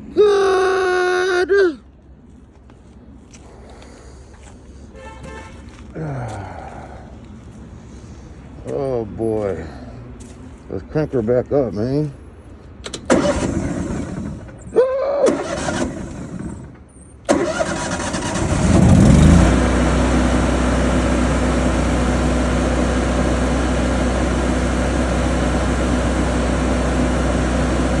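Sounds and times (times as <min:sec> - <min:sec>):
engine cranking and starting: 0:12.8 - 0:21.7.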